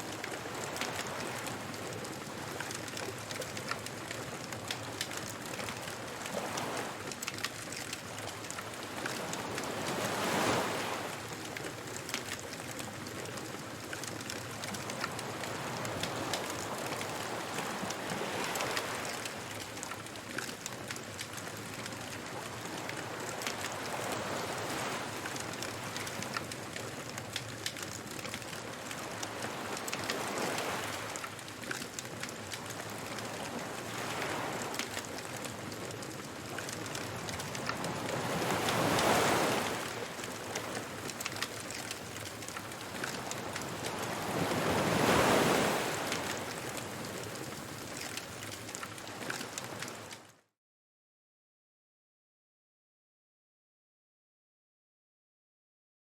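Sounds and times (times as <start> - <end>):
bonfire crackling: 0.1 - 50.1
surf washing in: 15.1 - 19.3, 36.9 - 47.6.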